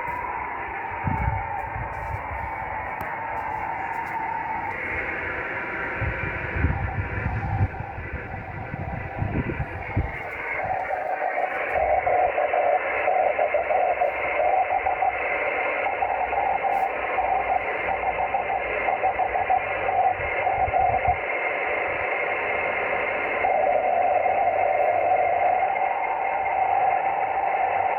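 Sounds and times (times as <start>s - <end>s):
rough radio beacon tone: 0.0s - 21.2s
receiver hiss: 0.0s - 27.9s.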